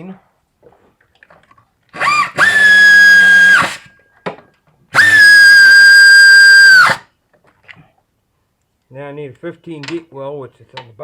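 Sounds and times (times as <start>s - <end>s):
power driver motor whine: 2.0s - 3.9s, 5.0s - 7.0s.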